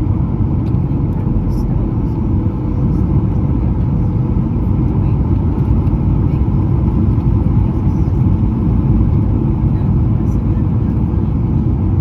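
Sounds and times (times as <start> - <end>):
airliner cabin roar: 0.0 - 12.0.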